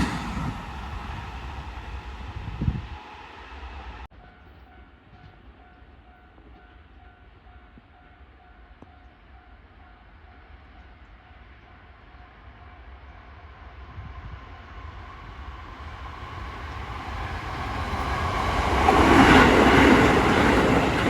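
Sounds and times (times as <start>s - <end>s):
train running past: 0.0s - 21.0s.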